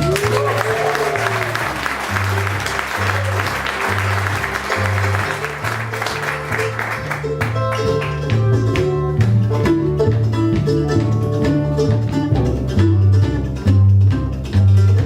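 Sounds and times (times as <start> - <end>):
audience applause: 0.0 - 8.4
bluegrass band playing: 0.0 - 15.0
upright bass walking: 0.0 - 15.0.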